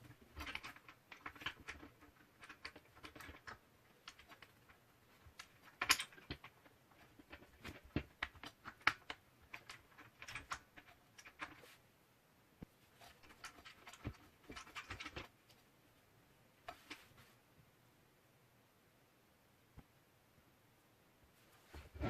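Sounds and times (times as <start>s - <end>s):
objects being handled clicking: 0.0s - 11.7s, 13.1s - 15.6s.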